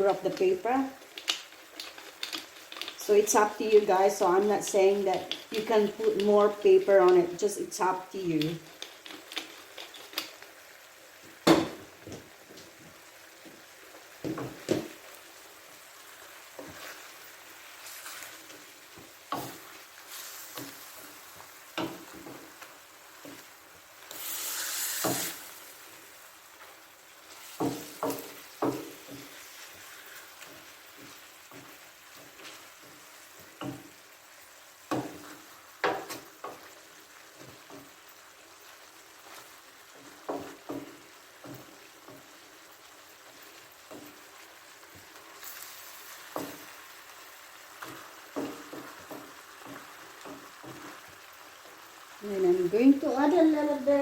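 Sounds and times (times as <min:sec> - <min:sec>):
low sizzle: 0:00.0 - 0:54.0
loud hiss: 0:24.0 - 0:26.1.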